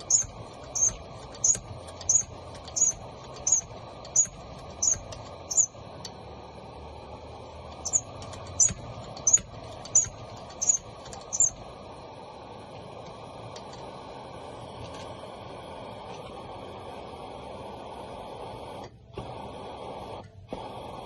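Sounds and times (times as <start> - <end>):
short high squeaks: 0.0 - 5.8, 7.8 - 11.6
lantern burner hissing: 0.0 - 21.0.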